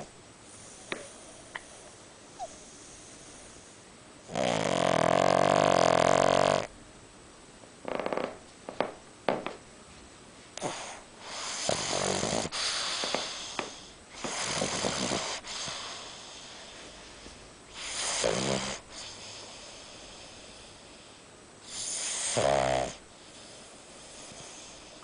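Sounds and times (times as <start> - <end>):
dog snoring: 2.4 - 6.8, 7.8 - 8.4, 10.6 - 16.8, 17.7 - 25.0
dog snorting: 4.3 - 6.7, 10.6 - 16.5, 17.7 - 19.4, 21.7 - 23.0.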